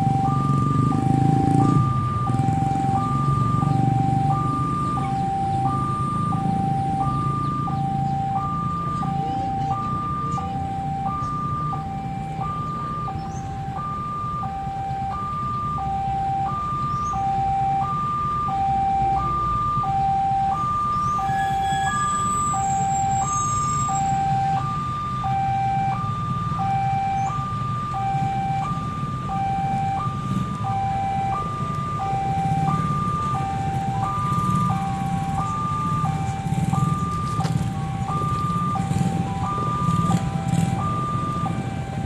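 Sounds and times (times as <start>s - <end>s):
two-tone crossing alarm: 0.0s - 42.0s.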